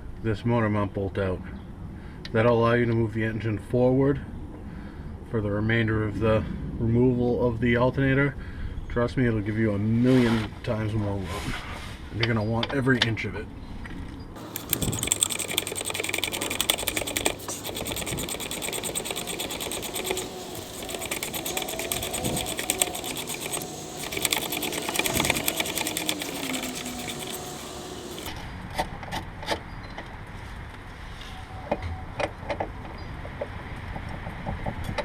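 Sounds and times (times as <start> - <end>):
power wrench rattling: 14.4 - 28.3.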